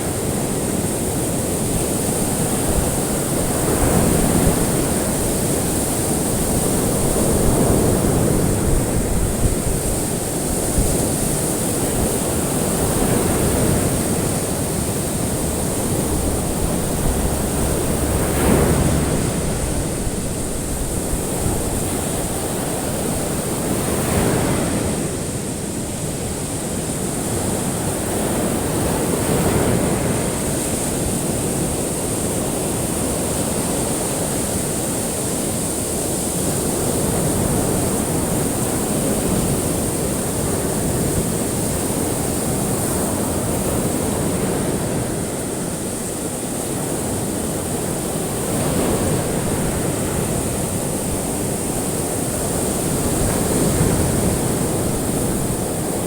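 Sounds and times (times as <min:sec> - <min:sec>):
ocean waves breaking on shore: 0:00.0 - 0:56.0
steady high hiss: 0:09.1 - 0:23.2.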